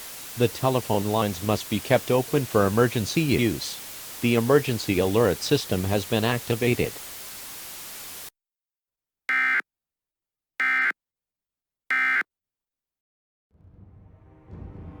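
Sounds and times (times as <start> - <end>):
steady hiss: 0.0 - 8.3.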